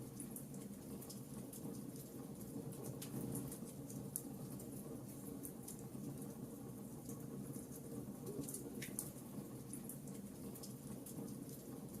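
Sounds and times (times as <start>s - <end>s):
fire crackling and popping: 7.0s - 9.2s.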